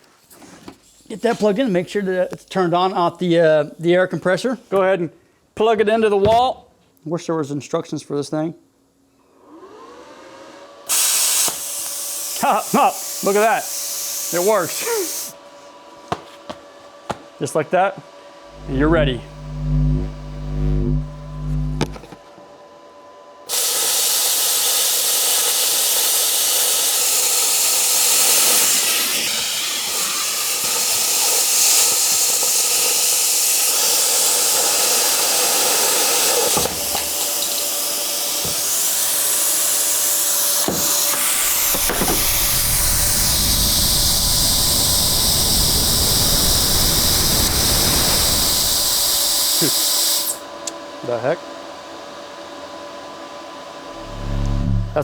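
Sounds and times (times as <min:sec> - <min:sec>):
plasma cutter hissing: 0:10.9 - 0:15.3, 0:18.5 - 0:22.0, 0:23.5 - 0:50.4
low rumble: 0:18.5 - 0:22.0, 0:53.9 - 0:55.0.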